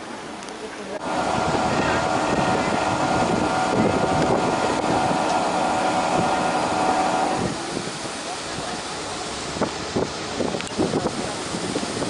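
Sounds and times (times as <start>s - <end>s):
machine drone with whining tones: 1.0s - 7.7s.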